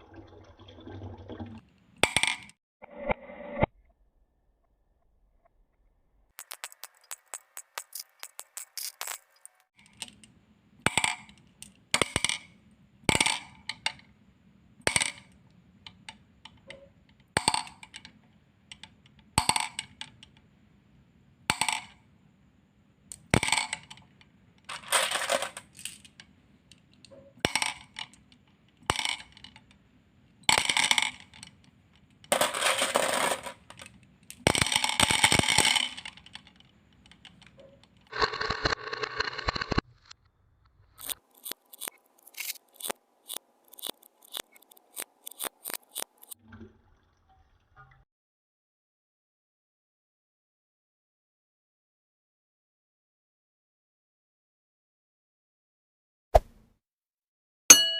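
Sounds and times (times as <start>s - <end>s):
marbles clicking down a marble run: 6.4s - 9.6s, 32.3s - 37.3s.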